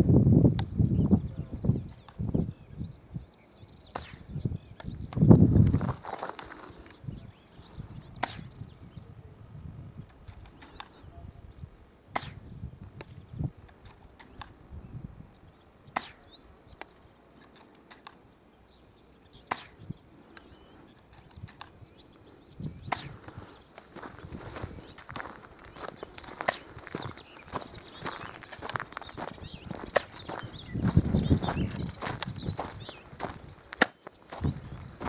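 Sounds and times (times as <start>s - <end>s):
airsoft rifle shots: 8.2s - 8.6s, 12.2s - 12.5s, 16.0s - 16.4s, 19.5s - 19.9s, 22.9s - 23.3s, 26.4s - 26.9s, 29.8s - 30.3s.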